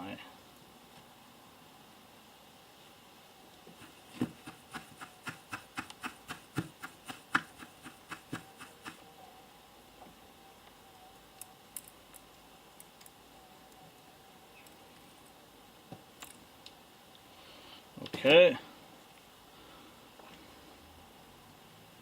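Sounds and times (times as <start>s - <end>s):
hand tools clicking and tapping: 3.8s - 9.0s.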